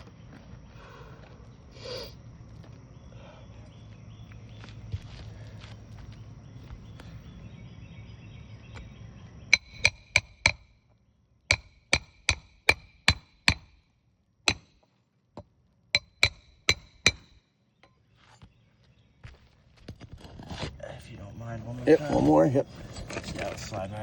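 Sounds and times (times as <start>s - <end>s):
hammer driving nails into shingles: 9.5s - 10.7s, 11.5s - 13.8s, 14.5s - 14.8s, 16.0s - 17.4s.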